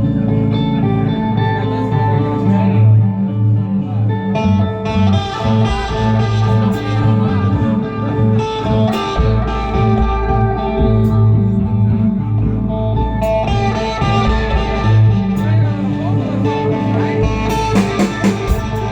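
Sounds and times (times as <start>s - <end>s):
low bass notes: 0.0s - 18.9s
sustained electric guitar: 0.0s - 18.9s
rock band playing: 4.8s - 18.9s.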